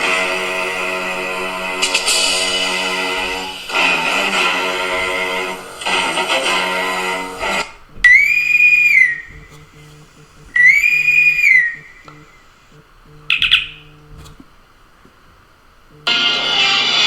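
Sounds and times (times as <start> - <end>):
whistle-like ringtone: 8.1 - 9.3, 10.6 - 12.1.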